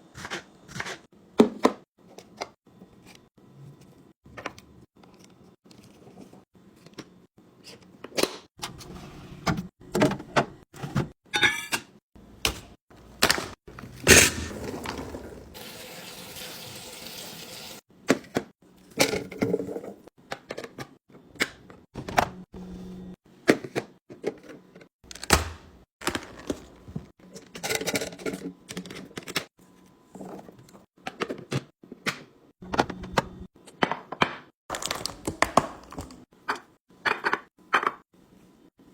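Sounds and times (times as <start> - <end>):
water running: 13.7 - 17.8
food containers knocking and clattering: 26.0 - 29.3.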